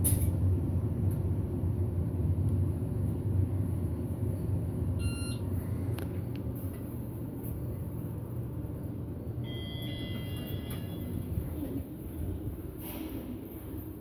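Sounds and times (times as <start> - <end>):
elevator running rumble: 0.0 - 14.0
short electronic beep: 5.0 - 5.4, 9.5 - 11.1.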